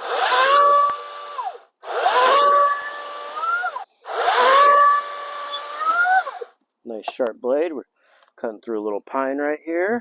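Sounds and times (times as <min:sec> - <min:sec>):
electric chainsaw cutting log: 0:00.0 - 0:06.6.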